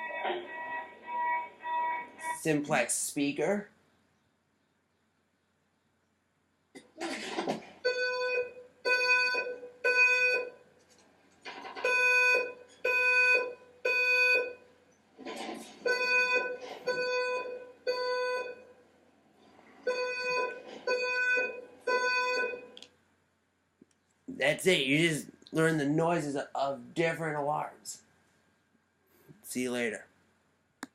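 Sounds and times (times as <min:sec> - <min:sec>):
fire alarm beeps: 0:00.0 - 0:02.6, 0:07.8 - 0:10.6, 0:11.8 - 0:14.7, 0:15.8 - 0:18.7, 0:19.8 - 0:22.8.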